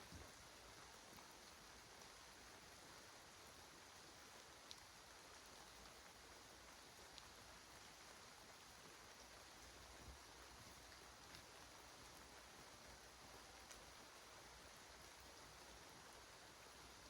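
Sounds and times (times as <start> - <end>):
faint steady hiss: 0.0 - 17.0
dripping water ticks: 4.5 - 6.0, 7.0 - 7.4.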